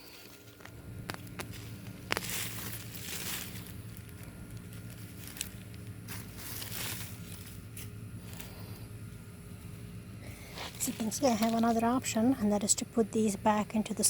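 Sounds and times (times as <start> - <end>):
soil rustling in plastic bag: 0.1 - 8.9, 10.3 - 12.2.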